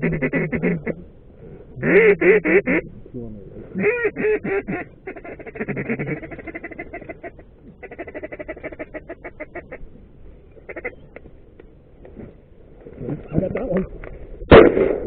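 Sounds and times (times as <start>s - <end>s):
duck quacking chatter: 0.0s - 1.0s, 1.8s - 3.0s, 3.7s - 9.8s, 10.6s - 11.2s.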